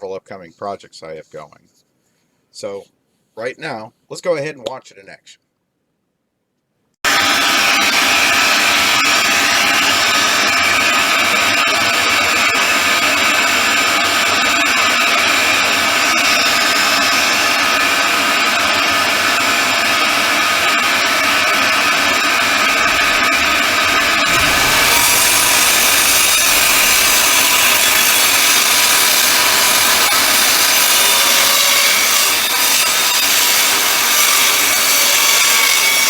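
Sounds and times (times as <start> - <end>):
circular saw motor whining: 7.1 - 35.2.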